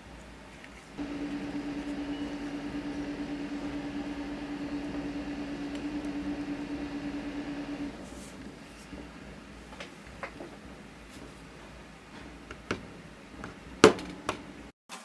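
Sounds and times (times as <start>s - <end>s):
small electric machine humming: 1.0s - 10.4s.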